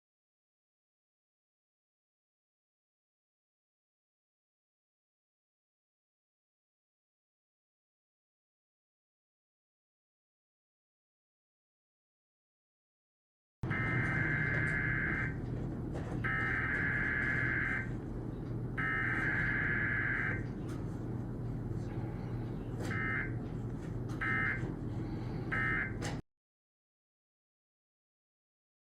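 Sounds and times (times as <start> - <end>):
clothes dryer rumbling: 13.6 - 26.2.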